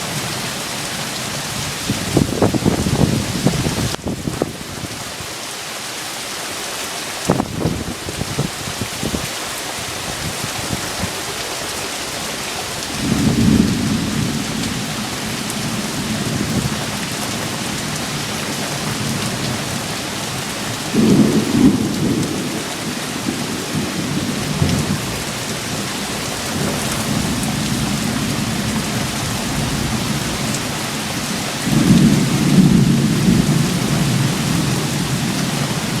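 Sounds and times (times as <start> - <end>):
heavy rain pouring: 0.0 - 36.0
low rolls of thunder: 12.9 - 18.0, 20.8 - 25.3, 31.6 - 36.0.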